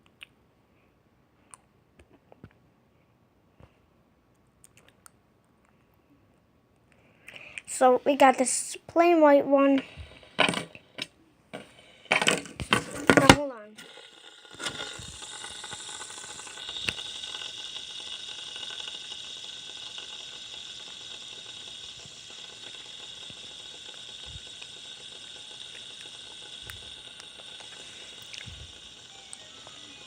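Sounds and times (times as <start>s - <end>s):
fidget spinner whirring: 7.6s - 30.0s.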